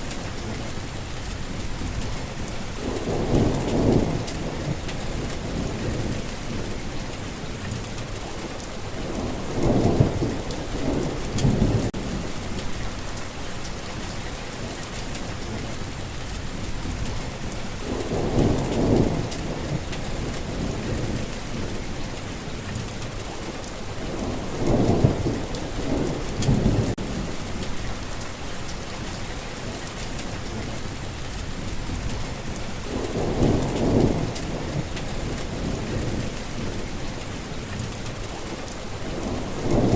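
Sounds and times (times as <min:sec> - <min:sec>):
steady rain falling: 0:00.0 - 0:39.9
low thunder rolls: 0:01.3 - 0:07.2, 0:08.9 - 0:13.2, 0:16.3 - 0:22.4, 0:23.9 - 0:28.3, 0:31.4 - 0:39.9.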